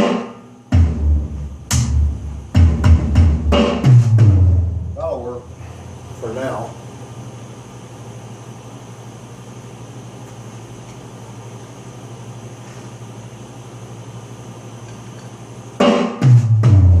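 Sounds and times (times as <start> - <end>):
electronic drum hit through speakers: 0.0 - 5.1, 15.8 - 17.0
steady low hum with hiss: 0.0 - 17.0.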